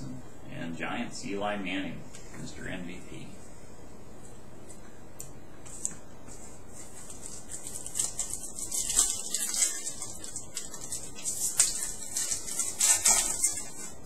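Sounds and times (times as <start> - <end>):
wrappers and cards crinkling: 6.7 - 14.0.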